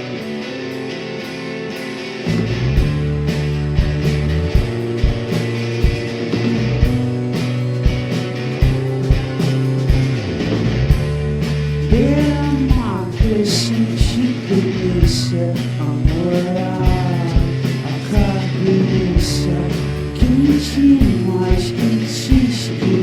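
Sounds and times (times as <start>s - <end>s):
bass line: 0.0s - 23.0s
guitar: 0.0s - 23.0s
drumbeat: 2.3s - 23.0s
person singing: 11.7s - 23.0s.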